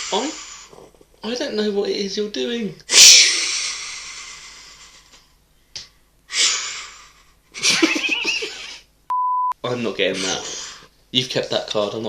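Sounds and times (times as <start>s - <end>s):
person's voice: 9.6s - 10.6s.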